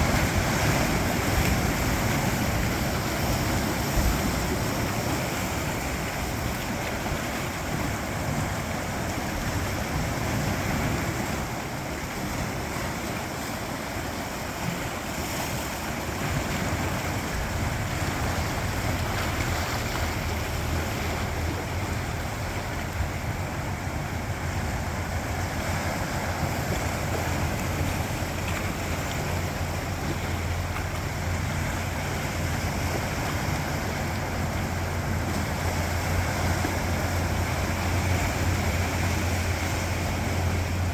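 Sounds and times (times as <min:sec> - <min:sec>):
waves washing over rocks: 0:00.0 - 0:40.9
wind rumble on microphone: 0:00.0 - 0:40.9.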